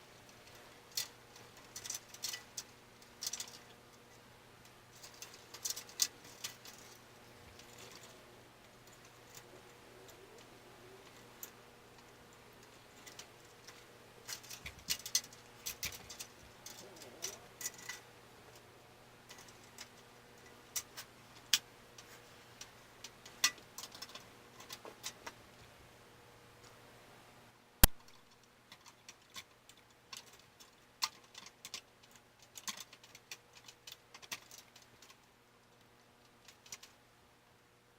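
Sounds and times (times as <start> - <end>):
faint steady hum: 0.0 - 37.9
light clicks and taps of computer parts: 27.8 - 35.3, 36.2 - 37.0.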